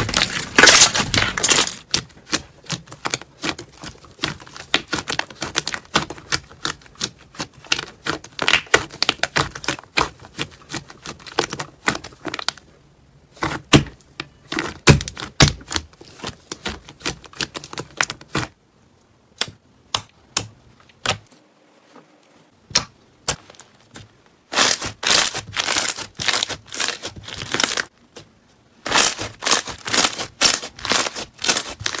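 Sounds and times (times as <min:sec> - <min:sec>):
slime crackling and popping: 0:00.0 - 0:02.4, 0:24.6 - 0:27.9, 0:28.9 - 0:32.0.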